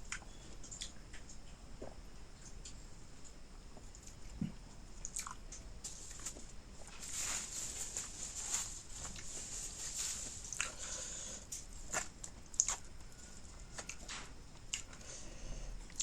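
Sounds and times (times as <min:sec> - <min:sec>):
wet chewing and lip smacks: 0:00.1 - 0:02.8, 0:05.0 - 0:05.7, 0:11.5 - 0:15.0.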